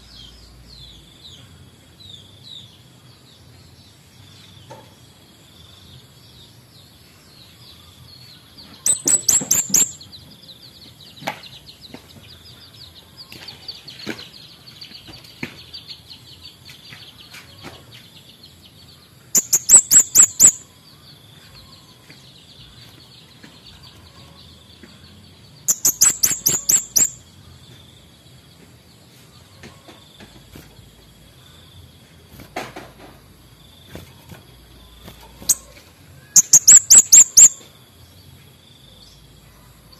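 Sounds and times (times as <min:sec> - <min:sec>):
songbird twittering bursts: 0:08.8 - 0:10.1, 0:19.3 - 0:20.7, 0:25.6 - 0:27.3, 0:34.9 - 0:37.6.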